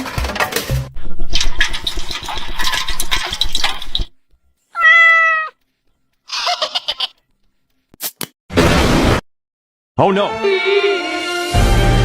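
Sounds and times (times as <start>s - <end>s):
cat meowing: 4.8s - 5.6s.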